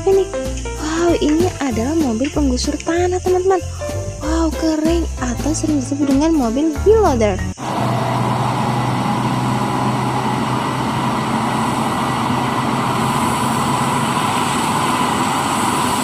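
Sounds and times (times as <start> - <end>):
heavy vehicle engine droning: 7.6 - 16.0.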